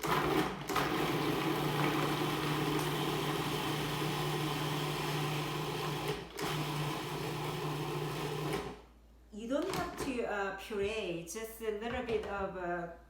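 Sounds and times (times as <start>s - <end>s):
food processor chopping: 0.0s - 8.8s.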